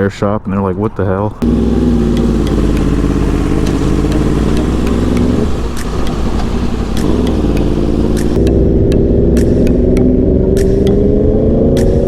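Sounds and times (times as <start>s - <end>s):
motorcycle engine running: 1.2s - 10.2s.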